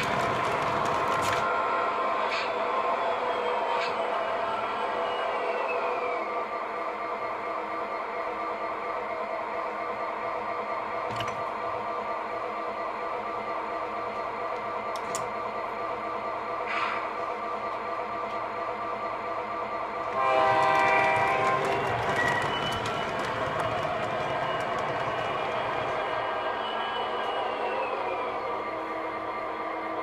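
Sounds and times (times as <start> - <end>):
model locomotive diesel engine sound: 0.0 - 30.0
locomotive horn blowing: 20.1 - 22.7.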